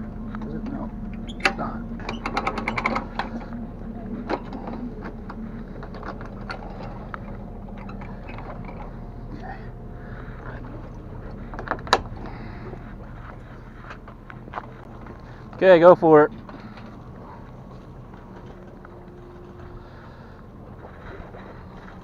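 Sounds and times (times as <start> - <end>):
vehicle engine idling: 0.0 - 22.0
rapid metallic clicks: 0.3 - 3.6.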